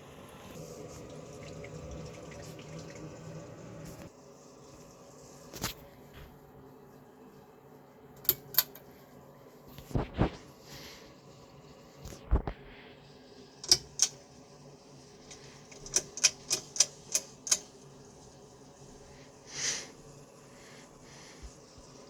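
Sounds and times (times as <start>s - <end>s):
faint steady hum: 0.0s - 22.0s
sharp clicks: 13.6s - 14.2s, 15.3s - 17.7s.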